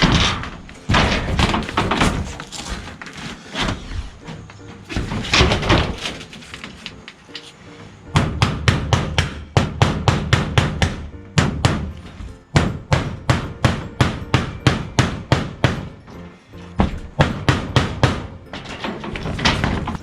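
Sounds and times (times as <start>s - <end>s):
background music: 0.0s - 20.0s
hammer striking nails: 8.1s - 16.2s, 16.8s - 20.0s.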